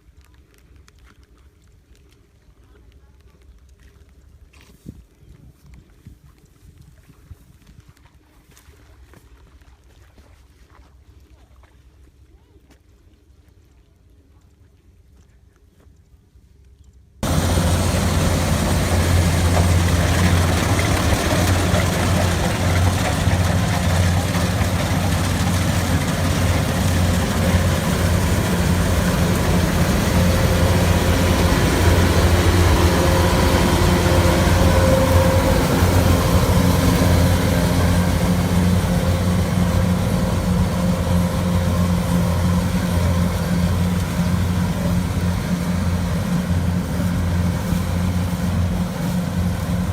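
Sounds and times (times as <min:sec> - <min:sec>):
harvester engine humming: 0:17.2 - 0:49.9.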